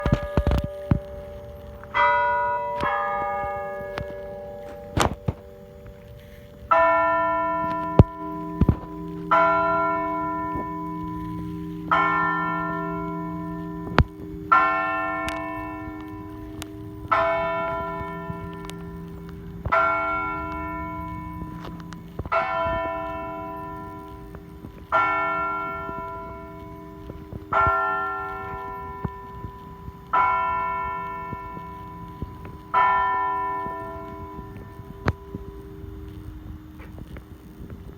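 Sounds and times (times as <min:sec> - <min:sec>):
church bell ringing: 0:00.0 - 0:37.6.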